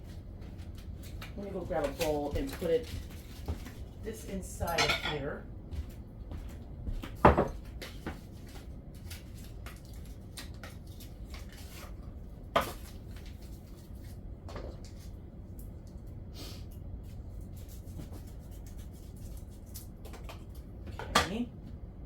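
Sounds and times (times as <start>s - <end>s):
low steady hum: 0.0s - 22.0s
kitchenware clicks and knocks: 4.7s - 5.2s.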